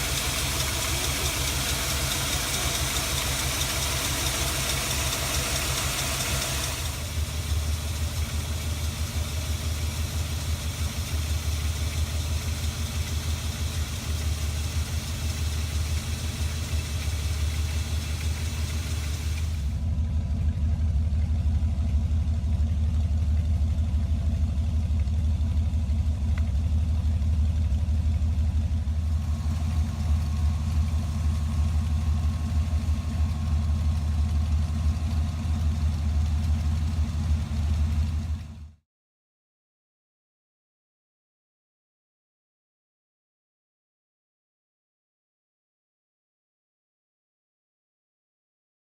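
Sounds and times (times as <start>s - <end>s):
car engine idling: 0.0s - 38.8s.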